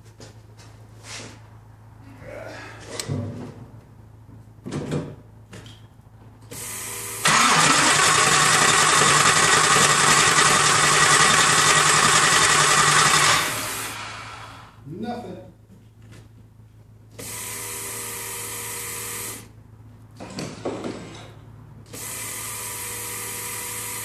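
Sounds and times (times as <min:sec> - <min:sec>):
car starter cranking: 0:07.2 - 0:14.1.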